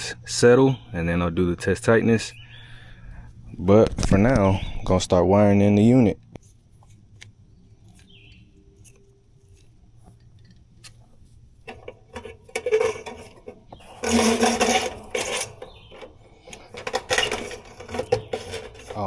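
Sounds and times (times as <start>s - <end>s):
hands rubbing and scraping parts: 6.2s - 19.0s.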